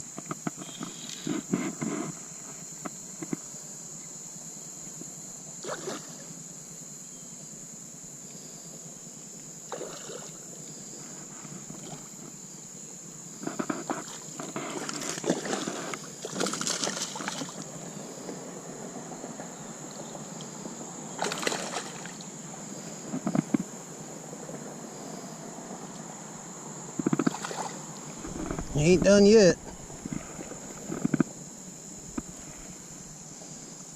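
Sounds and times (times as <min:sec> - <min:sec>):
insect chorus: 0:00.0 - 0:33.9
water splashing against kayak: 0:13.4 - 0:17.7, 0:21.2 - 0:22.2, 0:27.0 - 0:33.2.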